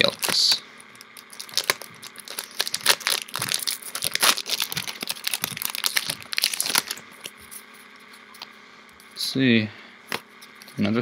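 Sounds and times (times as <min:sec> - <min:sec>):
foil wrapper crinkling: 0:00.0 - 0:07.5.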